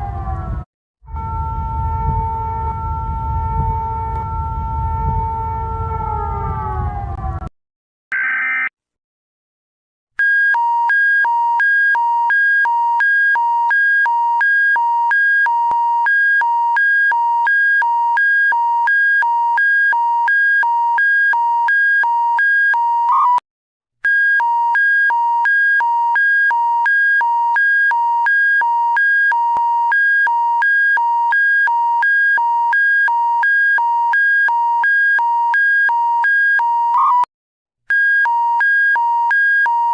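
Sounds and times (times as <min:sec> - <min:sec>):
reversed siren tone: 0:00.0 - 0:07.5, 0:10.6 - 0:23.4, 0:24.4 - 0:37.3
electronic alarm tone alternating: 0:08.1 - 0:08.7, 0:10.2 - 0:23.4, 0:24.0 - 0:37.3, 0:37.9 - 0:39.9.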